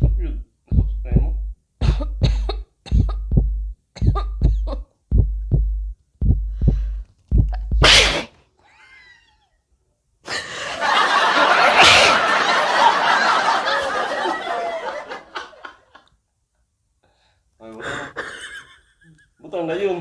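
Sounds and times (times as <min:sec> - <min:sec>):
person laughing and giggling: 0:04.1 - 0:04.8, 0:10.3 - 0:12.9, 0:17.8 - 0:19.4.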